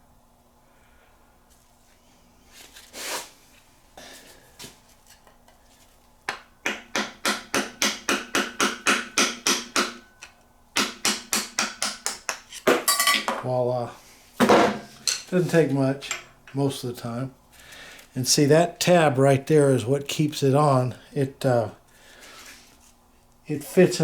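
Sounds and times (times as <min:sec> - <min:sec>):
rapid sharp hammer taps: 0:06.3 - 0:10.1, 0:10.8 - 0:12.5.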